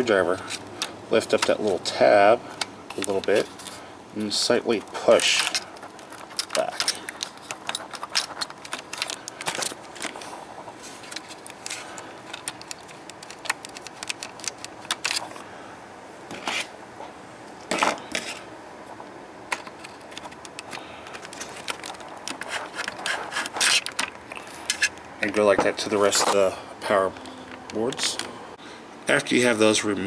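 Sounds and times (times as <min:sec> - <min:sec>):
screwdriver scraping: 0:05.1 - 0:15.4, 0:19.6 - 0:26.5.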